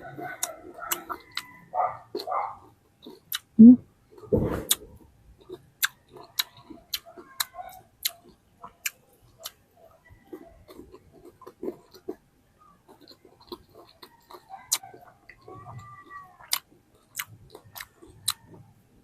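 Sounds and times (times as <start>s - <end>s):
eating clicks: 0.4s - 1.5s, 2.2s - 3.7s, 16.4s - 18.6s
soft mouth sounds: 3.0s - 9.6s.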